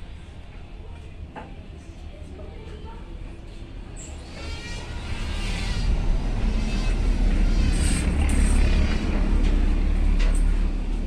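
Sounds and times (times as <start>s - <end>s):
heavy engine rumbling: 4.1s - 11.0s.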